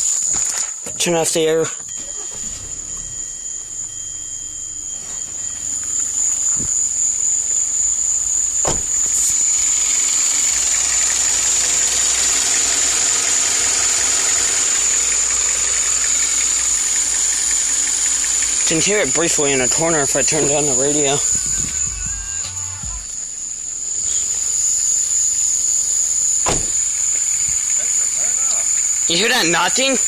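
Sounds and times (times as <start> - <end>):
steady high whine: 0.0 - 30.0
car engine idling with knock: 1.8 - 29.8.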